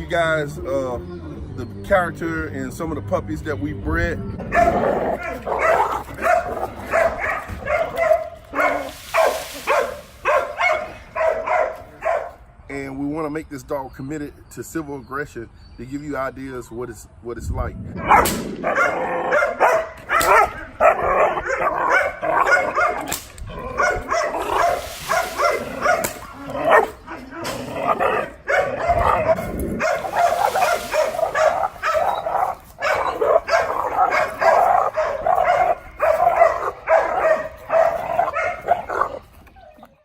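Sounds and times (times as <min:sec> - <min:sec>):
puppy barking aggressively: 0:04.5 - 0:12.4, 0:18.0 - 0:39.2.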